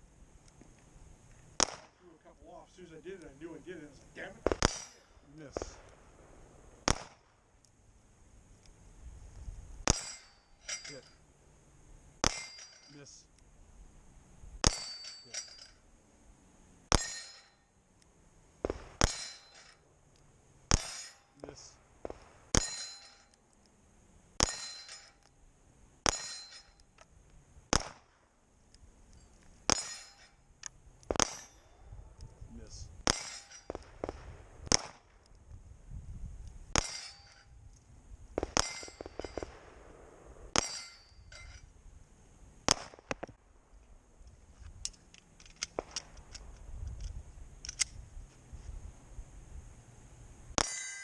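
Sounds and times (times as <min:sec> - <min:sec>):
pistol shots: 0:01.6 - 0:02.0, 0:04.2 - 0:06.0, 0:06.8 - 0:07.4, 0:09.8 - 0:10.3, 0:12.2 - 0:12.6, 0:18.6 - 0:19.7, 0:20.7 - 0:22.9, 0:27.7 - 0:28.2, 0:31.0 - 0:31.6, 0:33.0 - 0:35.3, 0:36.7 - 0:37.2, 0:38.4 - 0:41.0, 0:42.6 - 0:43.3
pistol shots hitting steel plates: 0:03.7 - 0:05.9, 0:09.8 - 0:11.2, 0:12.2 - 0:13.0, 0:14.6 - 0:15.8, 0:16.9 - 0:17.7, 0:18.6 - 0:19.8, 0:20.7 - 0:23.4, 0:24.4 - 0:25.3, 0:26.0 - 0:26.8, 0:29.7 - 0:30.4, 0:31.1 - 0:31.6, 0:33.0 - 0:35.1, 0:36.8 - 0:37.6, 0:38.4 - 0:39.7, 0:40.5 - 0:41.7, 0:50.6 - 0:51.0
metallic ringing: 0:09.9 - 0:11.2, 0:12.2 - 0:13.1, 0:14.6 - 0:15.8, 0:16.9 - 0:17.8, 0:19.0 - 0:19.8, 0:20.8 - 0:21.4, 0:22.5 - 0:23.4, 0:24.4 - 0:25.3, 0:26.1 - 0:26.9, 0:29.1 - 0:30.5, 0:31.2 - 0:31.8, 0:33.1 - 0:33.8, 0:36.8 - 0:37.6, 0:38.6 - 0:39.5, 0:40.5 - 0:41.7, 0:50.6 - 0:51.0
small metallic clanks: 0:09.9 - 0:11.2, 0:12.2 - 0:13.2, 0:14.6 - 0:15.8, 0:16.9 - 0:17.7, 0:19.0 - 0:19.8, 0:20.7 - 0:21.5, 0:22.6 - 0:23.4, 0:24.4 - 0:25.4, 0:26.1 - 0:27.1, 0:29.1 - 0:31.7, 0:33.1 - 0:33.9, 0:36.8 - 0:37.6, 0:38.5 - 0:39.5, 0:40.6 - 0:41.7, 0:50.6 - 0:51.0.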